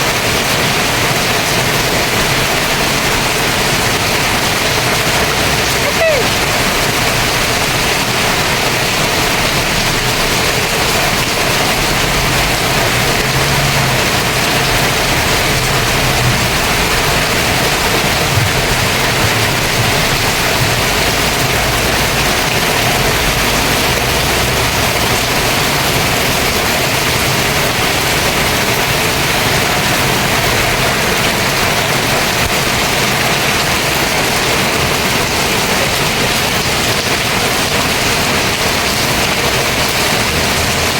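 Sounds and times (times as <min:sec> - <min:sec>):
heavy rain pouring: 0:00.0 - 0:40.9.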